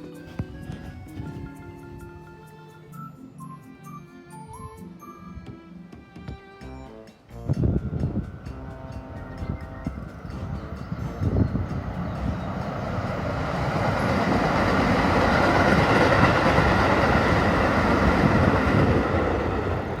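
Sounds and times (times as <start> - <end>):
train wheels rumbling on rail: 7.4 - 20.0.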